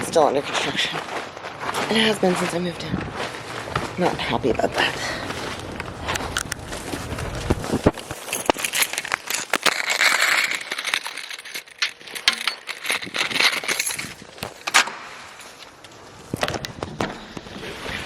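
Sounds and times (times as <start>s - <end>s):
objects clicking and clinking: 8.1s - 14.7s.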